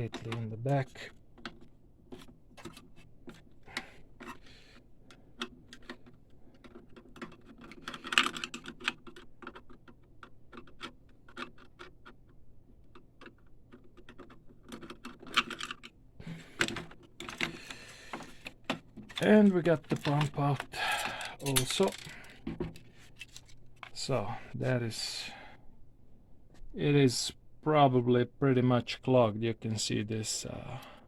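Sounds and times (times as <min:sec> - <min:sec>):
screwdriver and parts clicking: 0:05.1 - 0:16.0, 0:16.6 - 0:22.4
parts clattering: 0:12.9 - 0:24.3.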